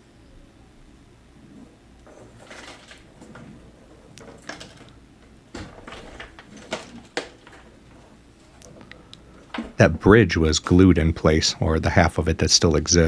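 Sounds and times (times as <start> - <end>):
guitar handling clicks and knocks: 2.1 - 9.8.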